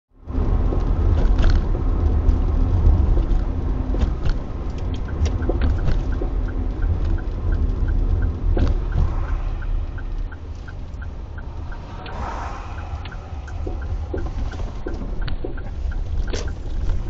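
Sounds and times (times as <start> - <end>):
car road rumble: 0.1 - 17.0
suspension knocks: 0.6 - 12.2, 12.8 - 17.0
faint even ticking: 4.1 - 17.0.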